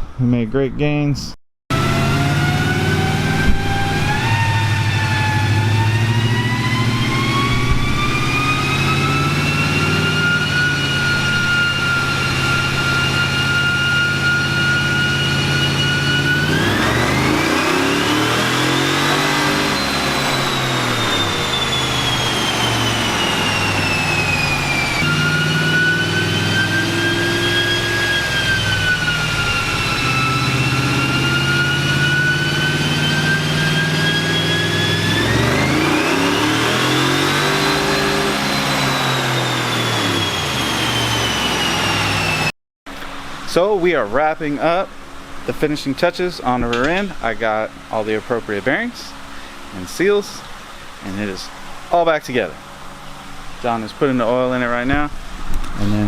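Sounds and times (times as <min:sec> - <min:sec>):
truck engine under load: 0:01.7 - 0:43.7
high whine: 0:01.7 - 0:56.0.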